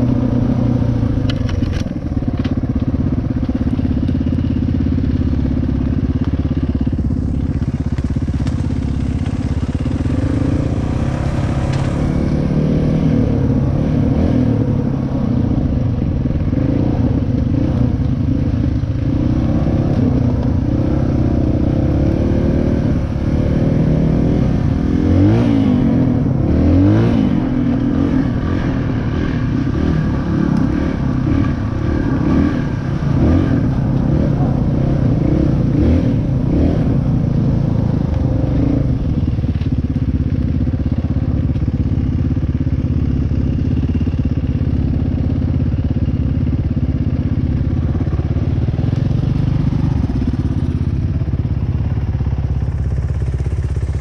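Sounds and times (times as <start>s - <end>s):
dirt bike engine revving: 19.0s - 39.4s.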